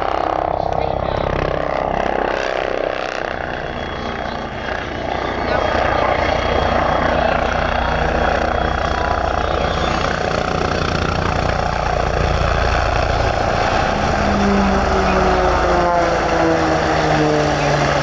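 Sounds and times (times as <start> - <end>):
helicopter rotor and turbine: 0.0 - 18.0.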